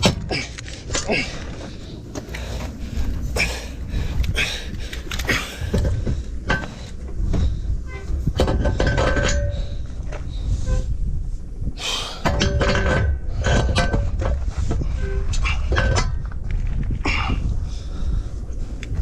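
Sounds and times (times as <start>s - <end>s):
wind buffeting microphone: 0.0s - 19.0s
metal knocks and clinks: 8.4s - 9.8s.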